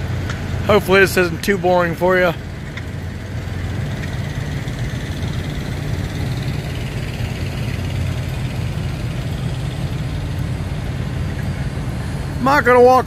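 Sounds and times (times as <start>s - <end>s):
truck diesel engines idling: 0.0s - 13.0s.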